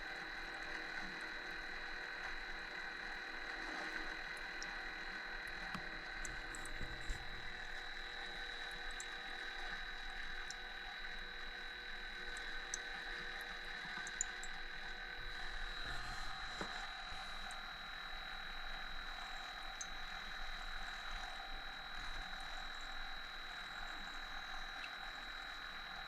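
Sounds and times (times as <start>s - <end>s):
coffee machine pump humming: 0.0s - 26.0s
faint ticks: 5.4s - 22.9s.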